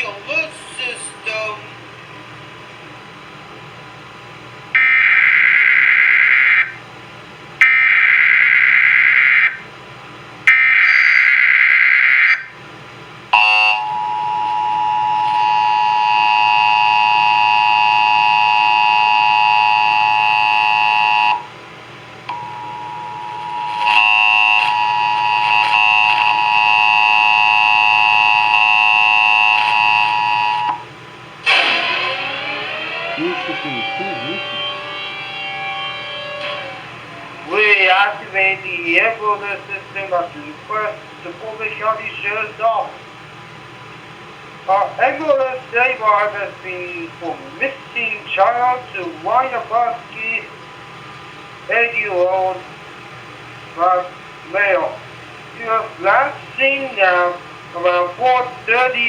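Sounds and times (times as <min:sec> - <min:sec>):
loud two-tone alarm: 0:04.8 - 0:06.8, 0:07.6 - 0:09.7, 0:10.5 - 0:12.6, 0:13.3 - 0:21.5, 0:22.3 - 0:30.8, 0:31.4 - 0:37.7
screeching digital data tones: 0:22.3 - 0:30.8, 0:31.5 - 0:37.7.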